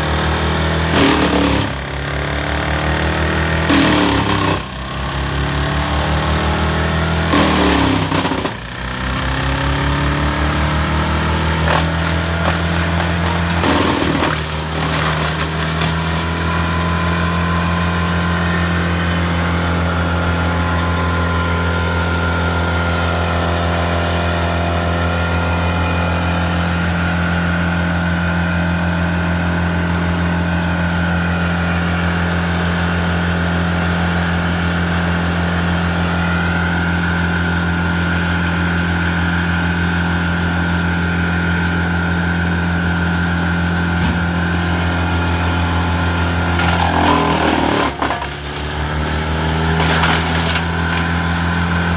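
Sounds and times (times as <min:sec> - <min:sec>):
diesel engine running: 0:00.0 - 0:51.9.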